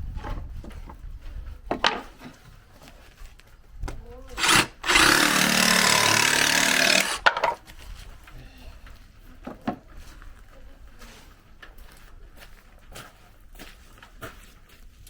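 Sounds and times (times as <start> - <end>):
reciprocating saw cutting plywood: 4.4 - 7.5.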